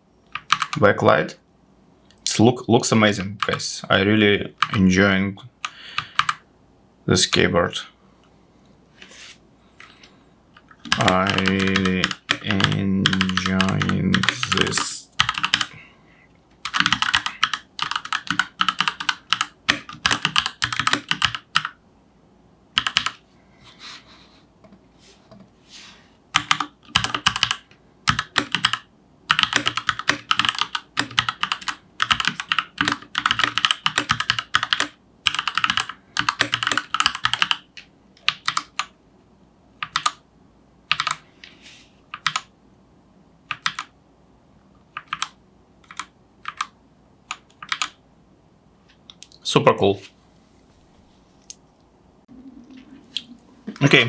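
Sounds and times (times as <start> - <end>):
mechanical keyboard typing: 0.3 - 0.8, 4.6 - 4.8, 6.0 - 6.4, 10.6 - 15.7, 16.6 - 21.8, 22.8 - 23.2, 26.4 - 37.6, 38.2 - 38.9, 39.8 - 40.2, 40.9 - 41.2, 42.1 - 42.5, 43.5 - 43.9, 45.0 - 48.0.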